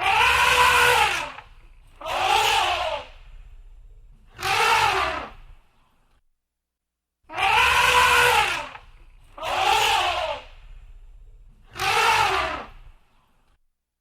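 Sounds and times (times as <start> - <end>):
elephant trumpeting: 0.0 - 3.7, 4.3 - 5.5, 7.3 - 13.0.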